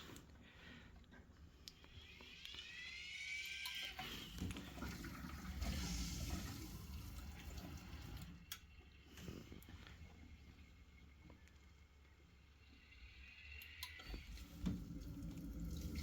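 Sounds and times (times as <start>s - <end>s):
rising and falling squeal: 1.9s - 4.6s, 12.5s - 14.6s.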